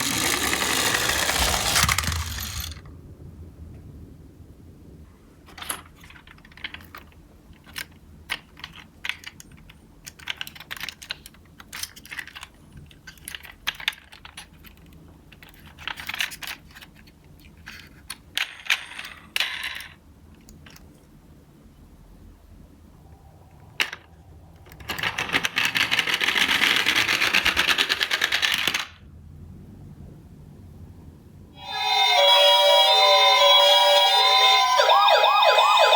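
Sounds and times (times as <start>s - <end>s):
toy cars clattering on hard surface: 0.0s - 2.8s, 23.8s - 29.0s.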